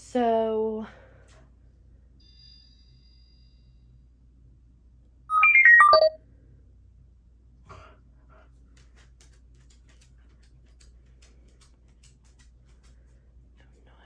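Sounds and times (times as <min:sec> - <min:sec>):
watch electronic chime beeps: 0:05.3 - 0:06.2.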